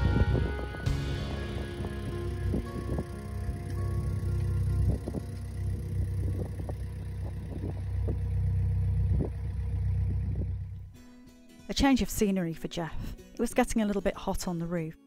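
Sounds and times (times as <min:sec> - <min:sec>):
diesel engine rumble: 0:00.0 - 0:10.9
faint steady tones: 0:00.0 - 0:10.9.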